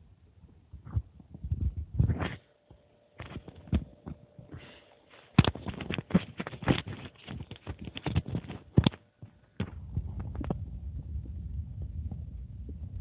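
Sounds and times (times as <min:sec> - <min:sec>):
stomach gurgling: 0:09.6 - 0:13.0.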